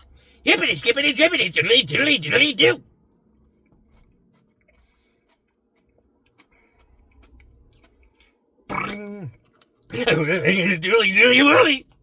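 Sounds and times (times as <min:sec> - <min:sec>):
eating ice cream mouth noises: 0:03.8 - 0:10.8.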